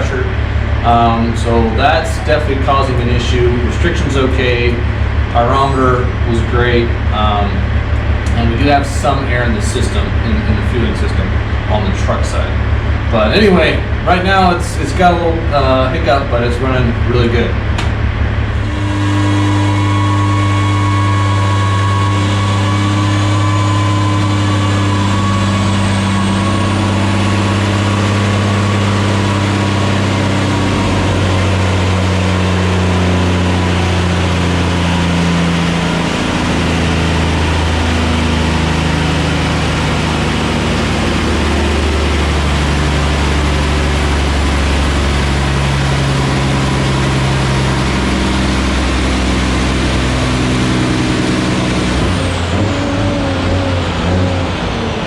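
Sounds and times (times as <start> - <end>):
faint high whine: 0.0 - 17.6, 18.5 - 53.3
diesel engine running: 0.0 - 55.0.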